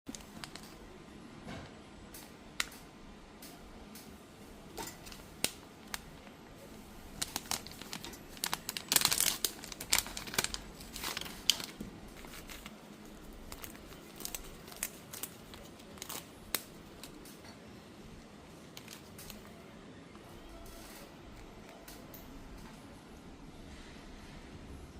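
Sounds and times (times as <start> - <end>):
packaging crinkling and rustling: 0.1 - 0.8, 4.8 - 17.6, 18.2 - 19.6.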